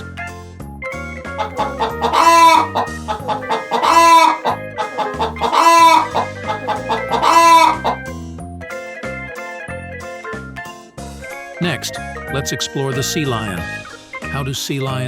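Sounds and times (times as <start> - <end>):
background music: 0.0 - 15.0
chicken calling: 1.4 - 8.1.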